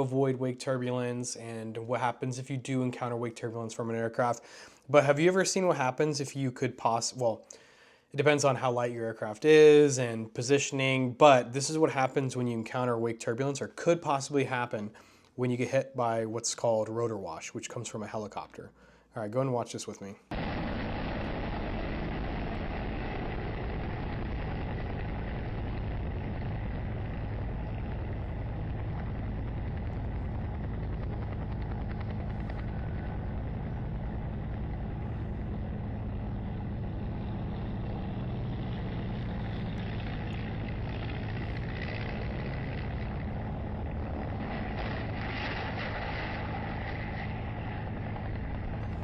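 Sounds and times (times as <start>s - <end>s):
helicopter rotor and engine drone: 20.3s - 49.0s.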